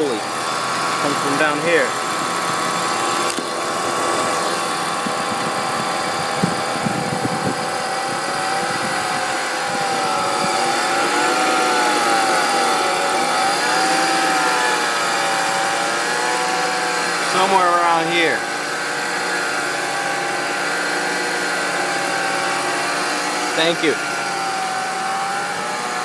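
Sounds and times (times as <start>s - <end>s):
car engine idling: 0.0s - 16.4s
belt drive whine: 0.0s - 26.0s.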